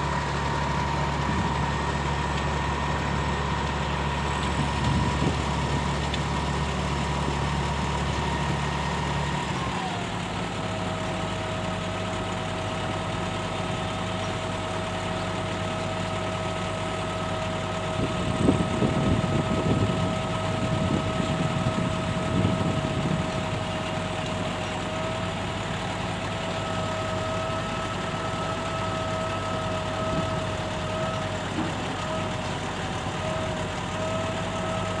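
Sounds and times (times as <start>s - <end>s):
diesel engine running: 0.0s - 35.0s
irregular knocking and clatter: 31.5s - 32.5s.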